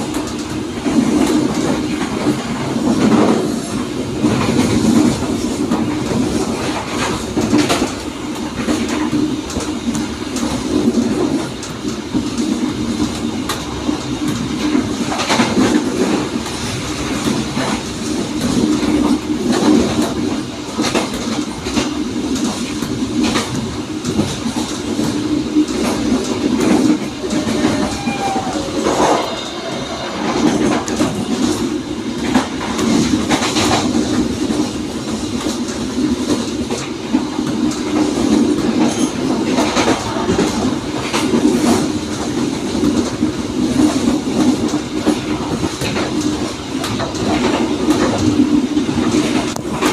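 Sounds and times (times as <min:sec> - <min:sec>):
train rumble: 0:00.0 - 0:49.9
high squeal: 0:27.0 - 0:31.6.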